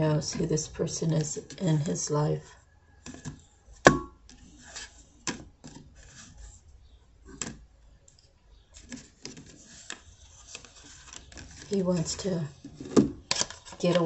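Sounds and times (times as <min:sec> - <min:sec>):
cards clicking and rustling: 0:08.8 - 0:14.0.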